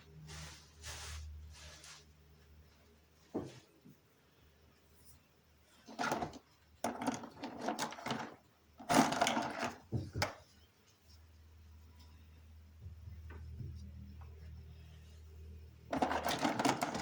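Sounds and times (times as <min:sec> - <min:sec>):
objects rustling and clattering: 0:00.0 - 0:02.2, 0:05.1 - 0:11.2, 0:15.8 - 0:17.0.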